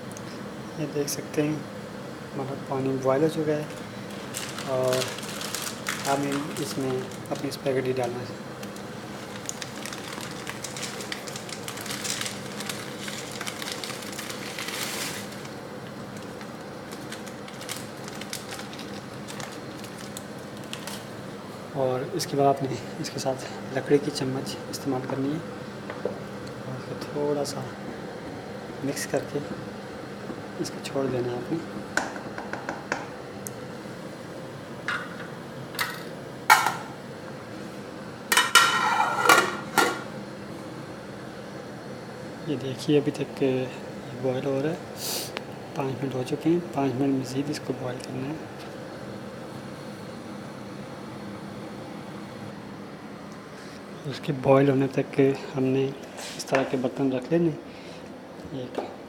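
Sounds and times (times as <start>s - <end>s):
steady low hum: 0.0s - 59.0s
spaghetti clicking and crackling: 3.7s - 21.1s.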